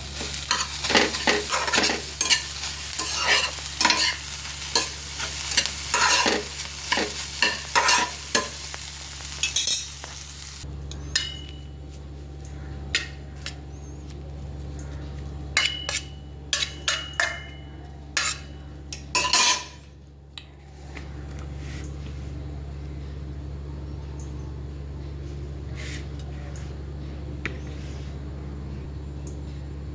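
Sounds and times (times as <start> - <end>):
food sizzling: 0.0 - 11.6
steady low hum: 0.0 - 29.9
spatula scraping a pan: 0.2 - 8.8.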